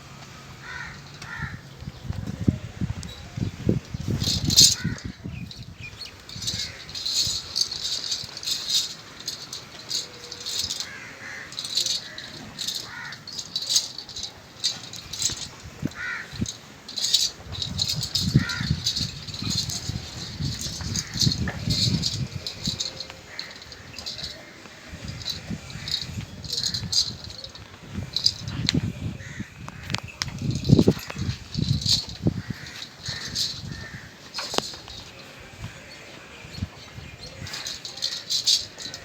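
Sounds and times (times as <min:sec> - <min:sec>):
crow cawing: 0:00.6 - 0:01.6, 0:10.8 - 0:13.4, 0:15.9 - 0:16.4, 0:18.4 - 0:18.7
metallic jingling and rattling: 0:00.6 - 0:39.0.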